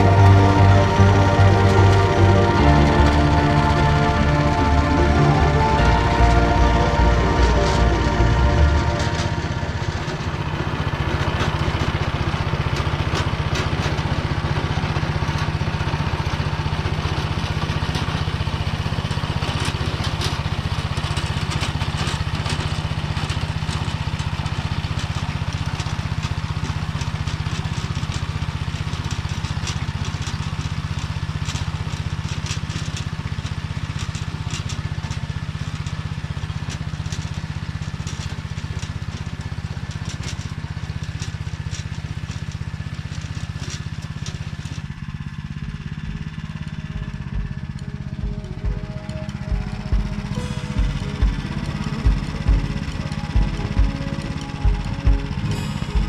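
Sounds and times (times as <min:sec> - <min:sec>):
tractor engine under load: 0:00.0 - 0:56.0.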